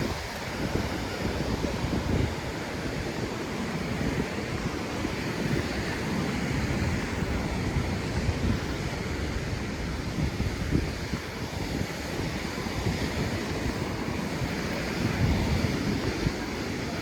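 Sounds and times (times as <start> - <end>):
sea surf washing onto beach: 0.0 - 17.0
wind buffeting microphone: 0.0 - 17.0.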